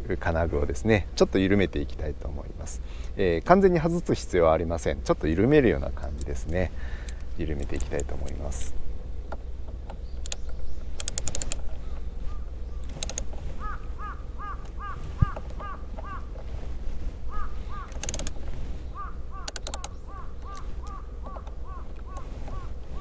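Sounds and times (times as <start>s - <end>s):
bird calling: 0.0s - 23.0s
socket wrench ratchet clicking: 6.2s - 8.7s, 9.3s - 11.8s, 12.8s - 13.8s, 17.8s - 18.4s, 19.4s - 22.3s.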